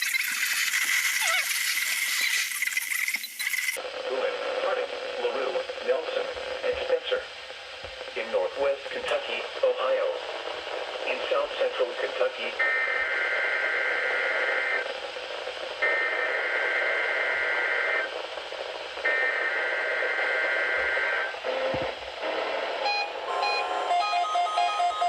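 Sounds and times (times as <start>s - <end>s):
warbling digital data tones: 0.0s - 3.8s
radio background hiss: 0.0s - 23.3s
electronic beeping: 22.8s - 25.0s.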